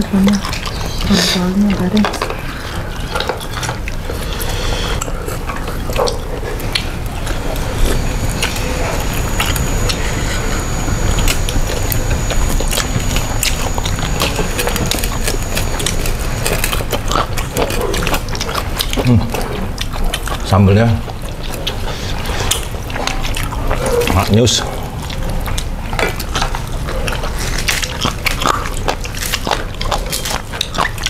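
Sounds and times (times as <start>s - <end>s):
low background rumble: 0.0s - 29.8s
person chewing: 0.0s - 31.0s.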